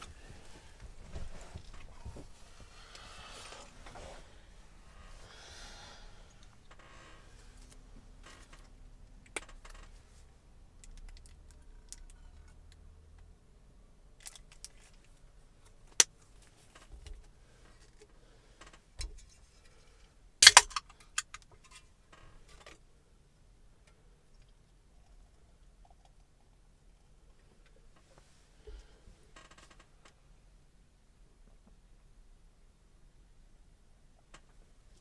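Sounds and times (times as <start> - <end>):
small hard objects clicking and rattling: 20.4 - 21.4.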